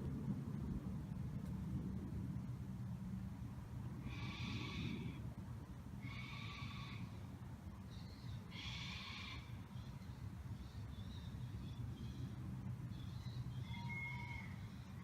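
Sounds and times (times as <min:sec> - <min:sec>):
steady low hum: 0:00.0 - 0:15.0
harsh animal screeches: 0:08.6 - 0:09.4.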